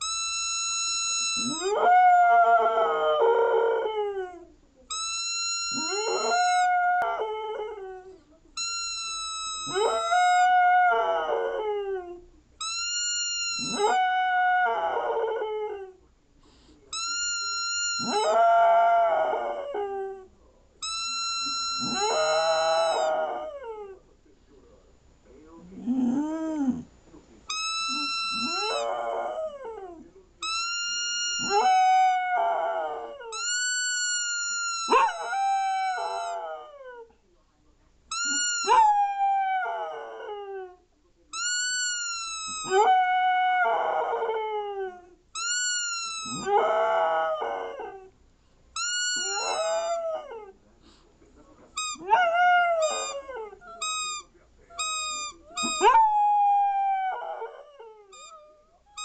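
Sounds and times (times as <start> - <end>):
shrill whistle toots: 0.0 - 1.8, 8.6 - 10.5, 12.6 - 14.0, 16.9 - 18.4, 20.8 - 23.1, 27.5 - 28.9, 30.4 - 32.2, 33.3 - 35.3, 38.1 - 39.0, 45.4 - 46.5, 48.8 - 50.0, 53.8 - 55.8, 58.2 - 58.4
dog howling: 1.4 - 4.5, 5.7 - 8.1, 9.6 - 12.2, 13.6 - 15.9, 18.0 - 20.3, 21.4 - 24.0, 25.8 - 26.9, 27.6 - 33.5, 34.2 - 37.1, 38.2 - 40.8, 42.5 - 45.1, 46.2 - 48.1, 49.1 - 50.5, 52.0 - 54.2, 54.8 - 59.0.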